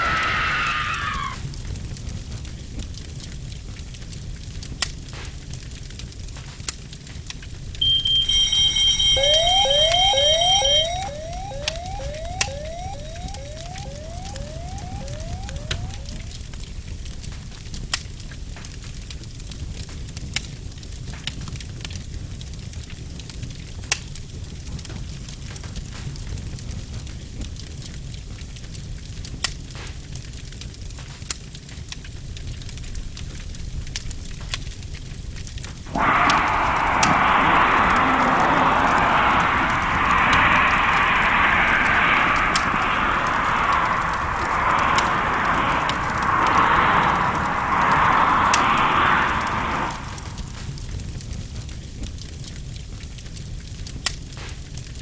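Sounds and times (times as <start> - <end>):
rising whoop alarm: 0.0 - 1.4, 7.8 - 16.6, 35.9 - 50.8
shrill high alarm tone: 0.0 - 1.4, 7.8 - 16.5, 35.9 - 50.6
scattered clicks: 7.8 - 16.4
low rumble: 35.9 - 51.0
fire crackling and popping: 35.9 - 54.5.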